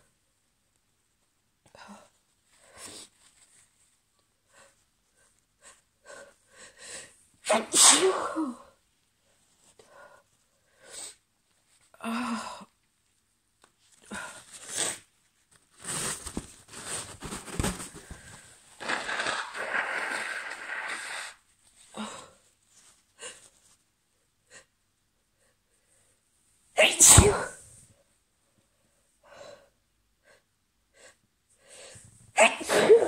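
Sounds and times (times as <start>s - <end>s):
woman sneezing: 7.4s - 8.7s, 26.8s - 27.6s, 32.4s - 33.0s.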